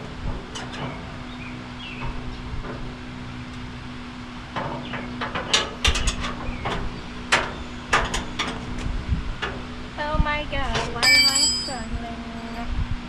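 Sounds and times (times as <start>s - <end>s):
hand tools knocking on metal: 10.8s - 11.9s.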